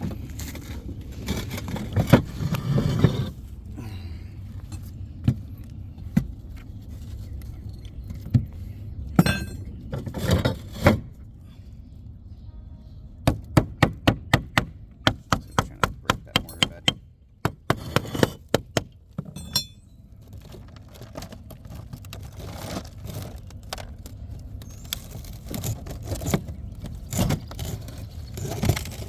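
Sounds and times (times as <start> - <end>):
hammer chipping mortar: 13.3 - 18.9.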